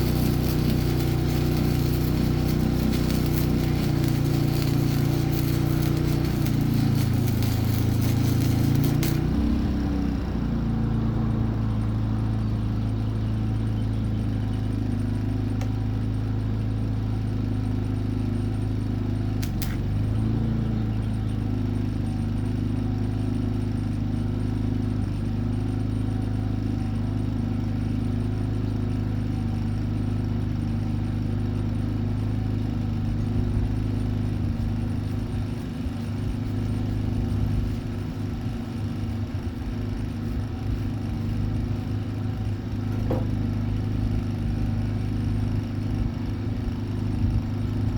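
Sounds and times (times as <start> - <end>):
hissing crackle: 0.0 - 10.2, 19.4 - 19.9, 33.7 - 43.4
low machine hum: 0.0 - 47.9
brief click: 19.4 - 19.8.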